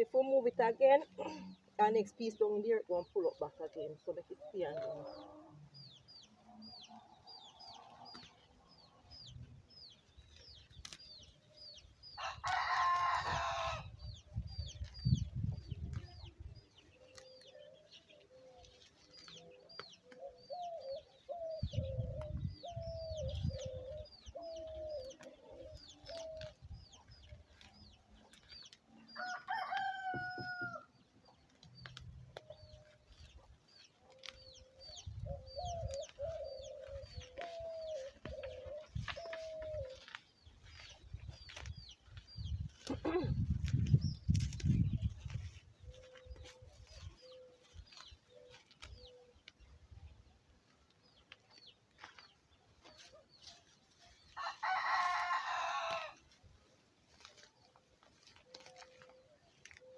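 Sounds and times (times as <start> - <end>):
rooster crowing: 12.2 - 13.9, 29.2 - 30.9, 54.4 - 56.2.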